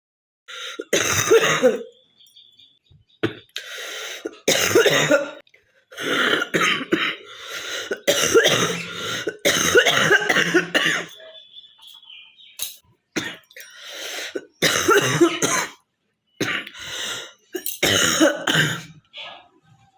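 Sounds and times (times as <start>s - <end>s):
girl coughing: 0.8s - 1.8s, 4.3s - 5.4s, 6.0s - 7.2s, 7.9s - 11.3s, 14.3s - 15.8s, 17.6s - 19.0s.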